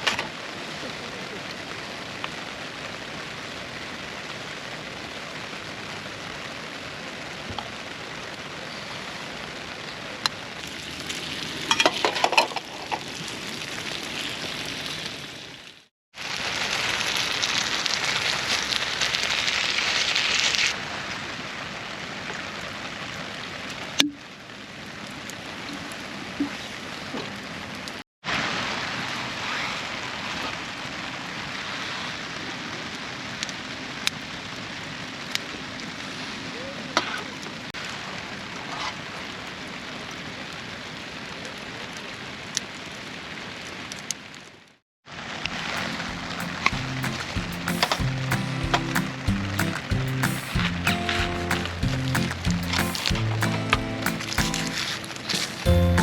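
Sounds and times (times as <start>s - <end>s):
fire crackles: 0.0s - 36.7s, 37.4s - 56.0s
food sizzling: 10.6s - 20.8s, 45.1s - 56.0s.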